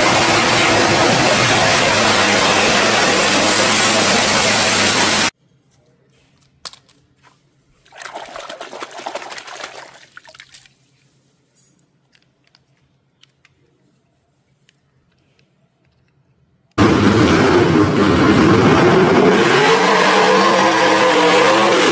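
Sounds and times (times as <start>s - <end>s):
water running hard: 0.0s - 5.3s
water splash with small clicks: 7.8s - 11.0s.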